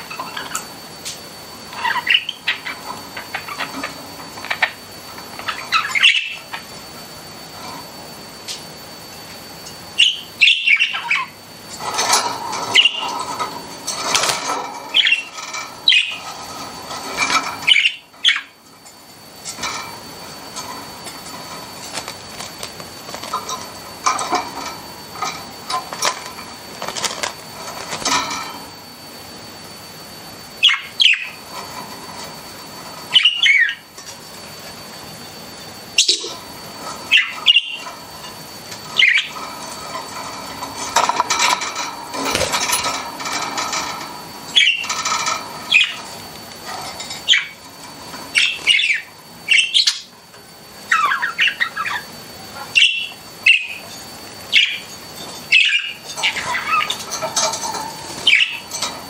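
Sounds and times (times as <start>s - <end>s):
budgerigars chirping and warbling: 1.7s - 6.6s, 10.0s - 18.6s, 30.6s - 31.4s, 33.1s - 33.9s, 36.0s - 36.4s, 37.0s - 38.0s, 38.8s - 40.5s, 41.3s - 46.2s, 47.0s - 50.1s, 50.9s - 53.9s, 54.5s - 59.0s.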